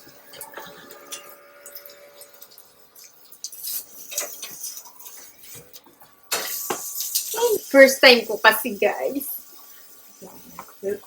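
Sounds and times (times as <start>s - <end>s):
utensil scraping grill plate: 0.6s - 11.0s
steady hiss: 3.4s - 11.0s.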